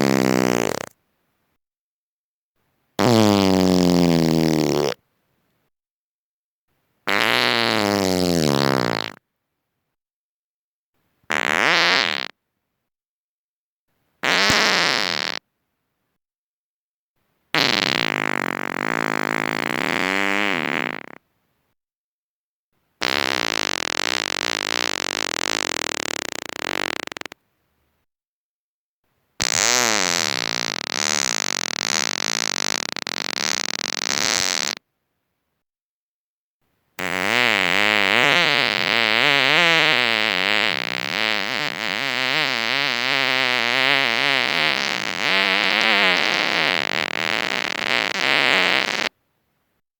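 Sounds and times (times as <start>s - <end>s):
person farting: 0.0s - 0.9s, 3.0s - 5.0s, 7.1s - 9.2s, 11.3s - 12.4s, 14.2s - 15.4s, 17.6s - 21.2s, 23.0s - 27.4s, 29.4s - 34.8s, 37.0s - 49.2s.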